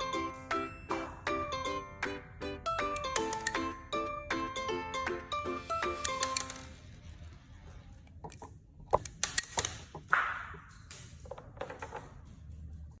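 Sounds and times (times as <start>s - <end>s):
gun clicks and clacks: 8.3s - 13.0s.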